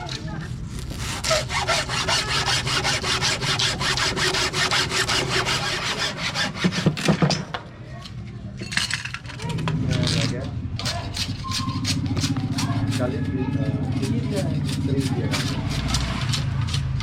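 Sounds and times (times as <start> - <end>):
saw cutting bamboo: 0.1 - 7.2, 10.8 - 17.0.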